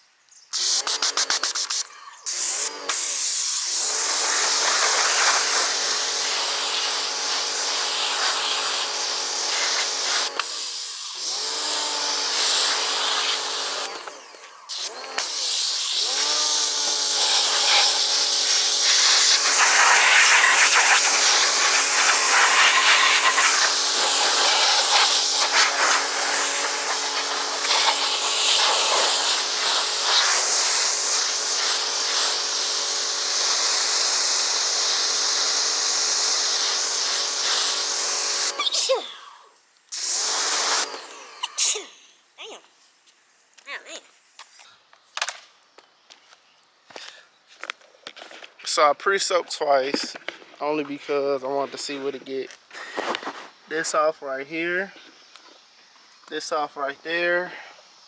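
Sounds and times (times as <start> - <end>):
water spray hissing: 0.5 - 39.0, 39.9 - 41.9
pressure washer motor hum: 0.6 - 38.8, 39.9 - 41.4.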